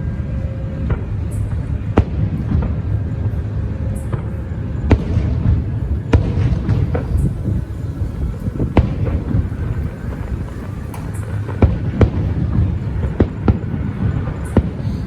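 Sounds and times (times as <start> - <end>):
low rumble: 0.0 - 15.0
fireworks bangs: 4.0 - 15.0.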